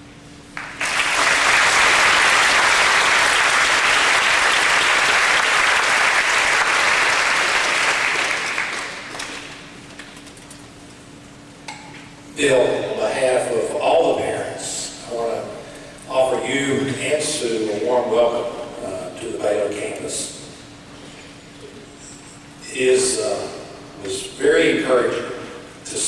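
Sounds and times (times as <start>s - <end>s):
audience applauding: 0.6s - 10.2s.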